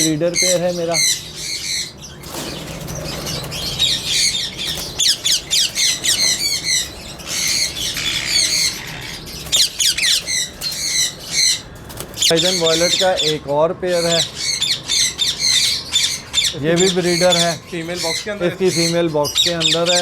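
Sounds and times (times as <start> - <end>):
parakeets squawking: 0.0 - 20.0.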